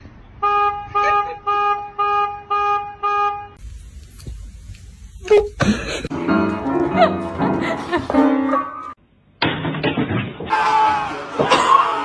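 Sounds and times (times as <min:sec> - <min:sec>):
horn-like honks: 0:00.4 - 0:03.6.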